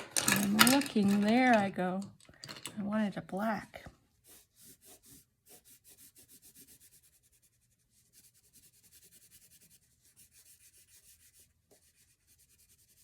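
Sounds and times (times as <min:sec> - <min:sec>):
crayon scratching on paper: 0:04.2 - 0:13.0.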